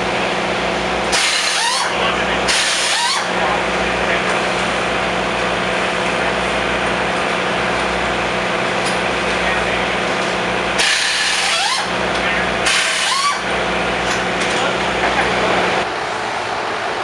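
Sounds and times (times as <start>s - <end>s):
steady machine hum: 0.0s - 17.0s
power tool whirring: 1.1s - 1.9s, 10.8s - 11.9s, 12.6s - 13.5s.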